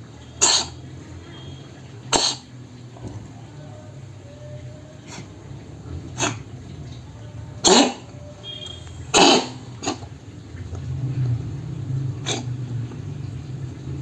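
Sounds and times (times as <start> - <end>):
cat coughing: 0.4 - 0.8, 2.1 - 2.6, 6.2 - 6.5, 7.6 - 10.1, 12.2 - 12.5.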